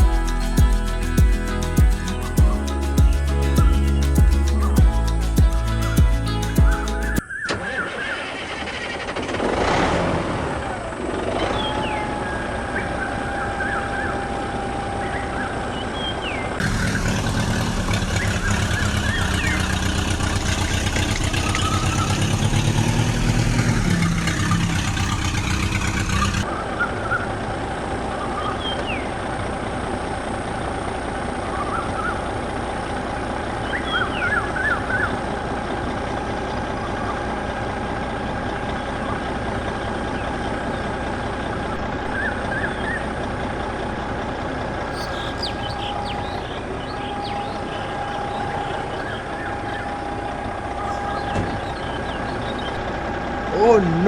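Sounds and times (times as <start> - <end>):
tractor engine running: 0.0 - 7.2, 8.3 - 54.0
short high chirps: 0.0 - 7.3.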